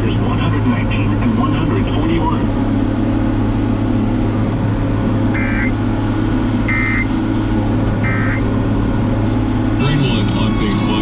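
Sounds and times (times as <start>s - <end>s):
vehicle engine drone: 0.0s - 11.0s
short electronic beeps: 5.4s - 5.8s, 6.7s - 7.1s, 8.0s - 8.4s.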